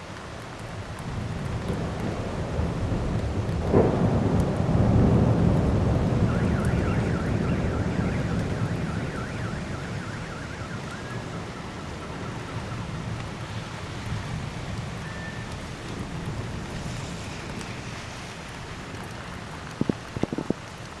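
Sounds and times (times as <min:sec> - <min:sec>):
heavy rain: 0:00.0 - 0:21.0
thunderclap rumbling: 0:00.7 - 0:20.6
warbling electronic alarm: 0:06.0 - 0:13.1.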